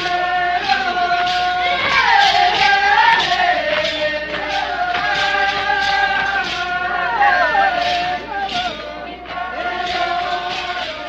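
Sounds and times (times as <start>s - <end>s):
group of voices singing: 0.0s - 11.0s
steady drum beat: 1.6s - 8.8s.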